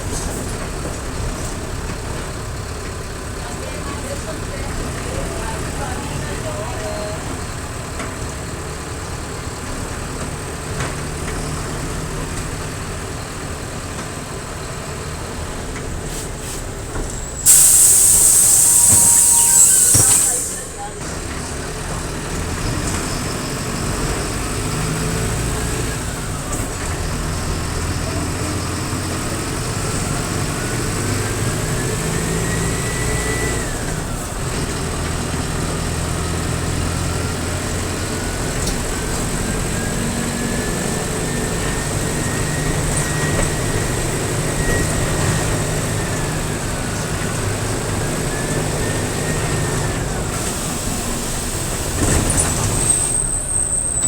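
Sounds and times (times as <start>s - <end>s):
bus diesel engine running: 0.0s - 54.0s
thin engine whistle: 17.4s - 21.0s.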